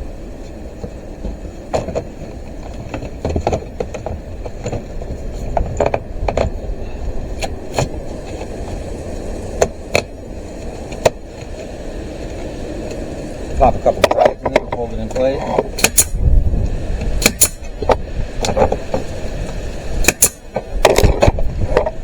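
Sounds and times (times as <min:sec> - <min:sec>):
steady low rumble: 0:00.0 - 0:22.0
boards clicking and knocking: 0:00.8 - 0:06.8, 0:07.4 - 0:08.8, 0:09.6 - 0:11.6, 0:13.6 - 0:16.2, 0:17.1 - 0:19.1, 0:20.0 - 0:22.0.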